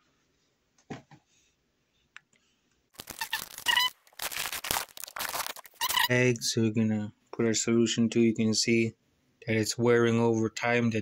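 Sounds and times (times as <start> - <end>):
brief squeaks: 3.1 - 4.0, 5.6 - 6.1.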